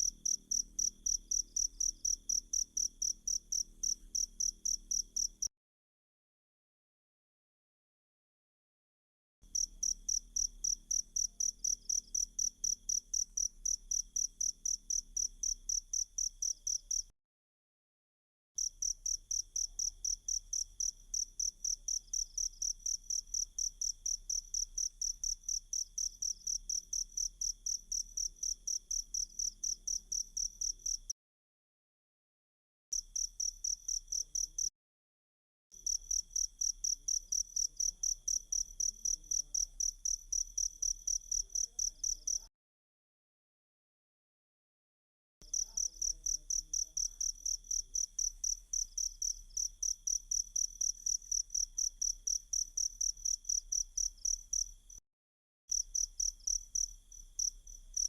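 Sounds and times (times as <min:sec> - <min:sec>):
cricket chirping: 0:00.0 - 0:05.5, 0:09.6 - 0:17.1, 0:18.6 - 0:31.1, 0:33.0 - 0:34.7, 0:35.8 - 0:42.5, 0:45.4 - 0:55.0, 0:55.7 - 0:58.0.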